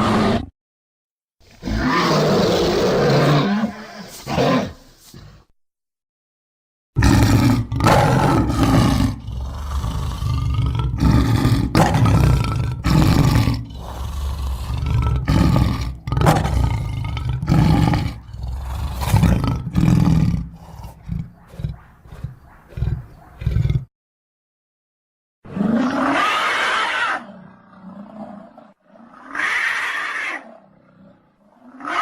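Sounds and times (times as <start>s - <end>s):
deep dinosaur roars: 0.0s - 0.5s, 7.0s - 23.9s, 25.5s - 32.0s.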